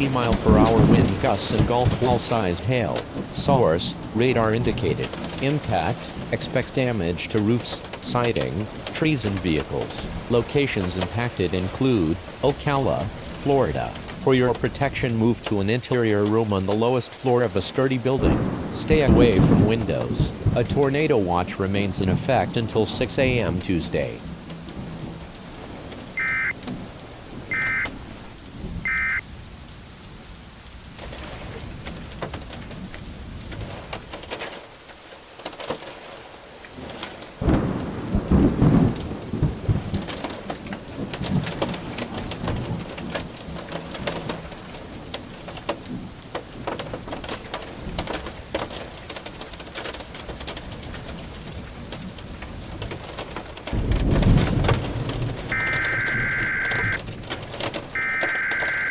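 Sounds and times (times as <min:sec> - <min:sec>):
rolling thunder: 0:00.0 - 0:15.5, 0:18.2 - 0:34.7, 0:35.6 - 0:58.9
steady rain: 0:00.0 - 0:58.9
beeping data bursts: 0:26.2 - 0:26.6, 0:27.5 - 0:27.9, 0:28.9 - 0:29.2, 0:55.6 - 0:57.0, 0:58.0 - 0:58.9.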